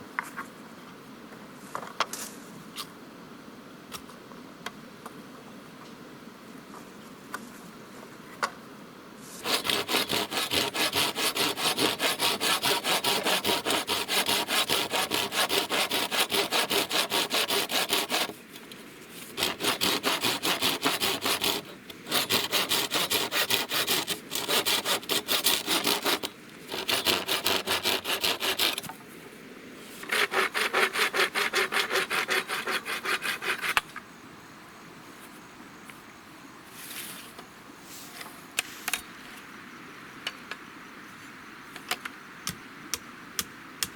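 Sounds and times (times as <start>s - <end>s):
hand saw cutting wood: 9.4s - 18.4s, 19.4s - 28.9s, 30.0s - 33.8s.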